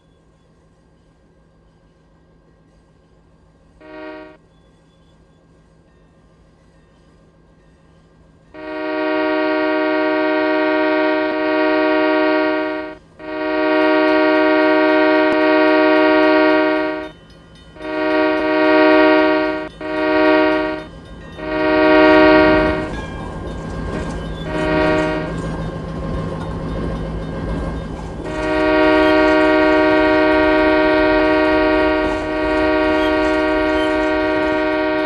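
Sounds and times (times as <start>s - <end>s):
train rumbling past: 0.0s - 35.0s
locomotive air horn blasts: 3.8s - 4.4s, 8.6s - 17.1s, 17.8s - 23.0s, 24.4s - 25.5s, 28.2s - 35.0s.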